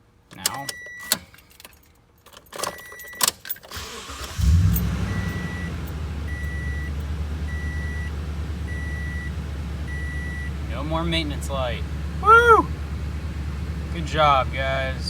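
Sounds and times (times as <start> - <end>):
keys jangling in ignition: 0.3 - 6.0
car engine starting and idling: 3.6 - 15.0
dash warning chime beeping: 4.4 - 11.3.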